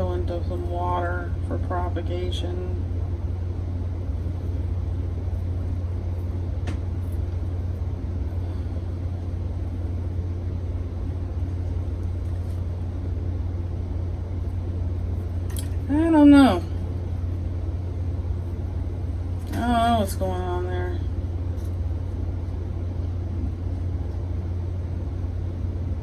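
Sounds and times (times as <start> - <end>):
steady low-pitched hum: 0.0 - 26.0.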